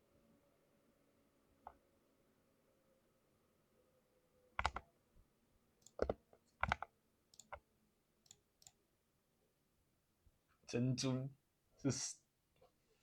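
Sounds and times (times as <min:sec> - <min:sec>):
mechanical keyboard keystrokes: 0:04.6 - 0:04.8, 0:05.8 - 0:07.6.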